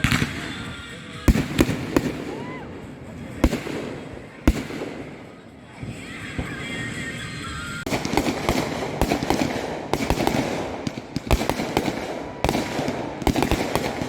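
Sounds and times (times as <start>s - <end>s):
fireworks banging and crackling: 0.0s - 14.0s.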